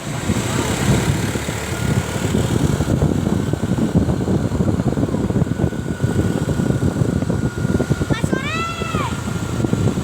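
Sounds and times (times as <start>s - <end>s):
road traffic rumble: 0.0s - 10.0s.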